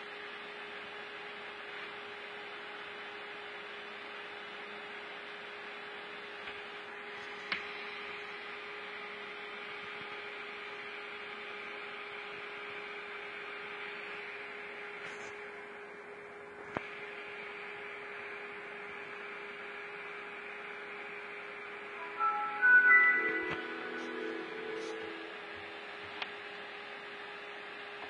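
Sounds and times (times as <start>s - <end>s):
steady hum: 20.0s - 27.2s.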